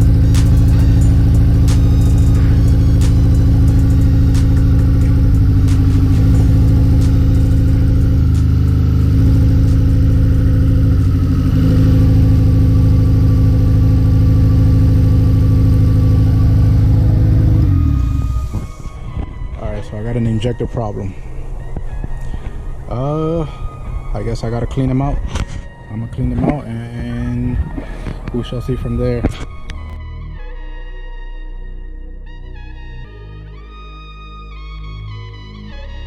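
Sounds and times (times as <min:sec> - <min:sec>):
car engine idling with misfire: 0:00.0 - 0:18.8.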